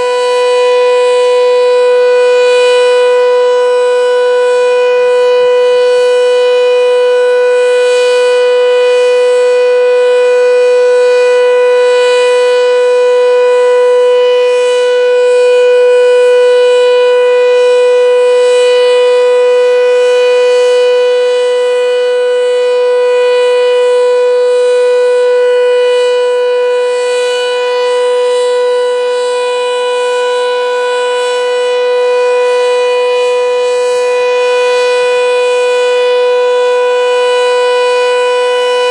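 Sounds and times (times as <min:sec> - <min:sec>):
outdoor warning siren steady tone: 0:00.0 - 0:38.9.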